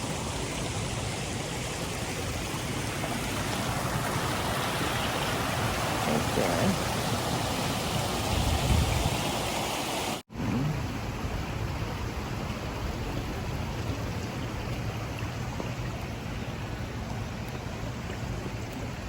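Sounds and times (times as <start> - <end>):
running water rushing: 0.0 - 19.0.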